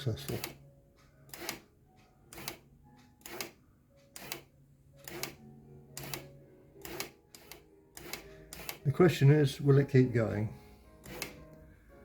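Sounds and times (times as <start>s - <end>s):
sharp mechanical click: 3.2s - 5.4s.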